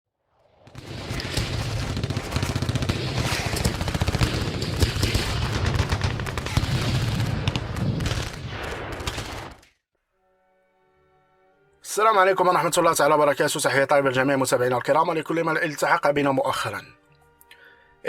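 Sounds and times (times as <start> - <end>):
rapid automatic gunfire: 0.8 - 9.6.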